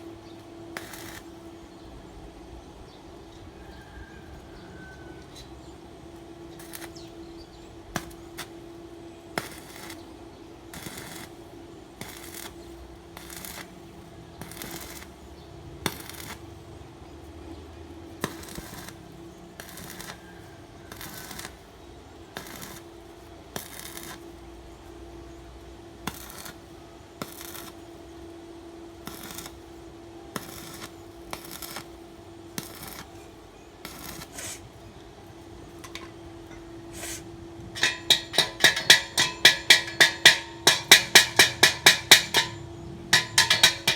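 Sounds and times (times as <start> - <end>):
arc welding crackling hiss: 0.0 - 1.7, 6.4 - 17.4, 18.1 - 43.9
steady hum: 20.9 - 43.9
sharp metallic clicks: 37.8 - 43.9.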